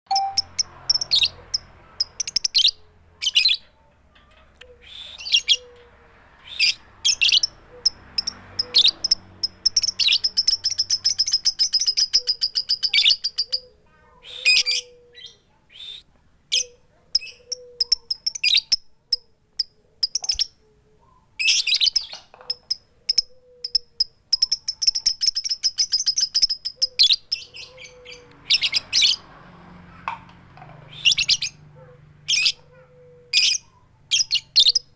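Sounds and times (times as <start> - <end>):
rapid ticking bird trill: 0.1 - 2.7, 6.5 - 13.7, 16.6 - 20.6, 21.6 - 28.8
lovebird chirps and calls: 0.1 - 3.7, 4.6 - 29.3, 30.8 - 31.6, 32.3 - 34.9.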